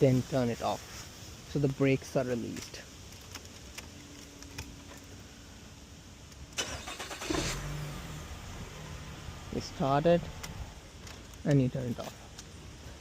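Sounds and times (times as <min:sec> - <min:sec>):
car engine starting and running: 0:06.4 - 0:12.8
faint clicks: 0:10.4 - 0:11.6.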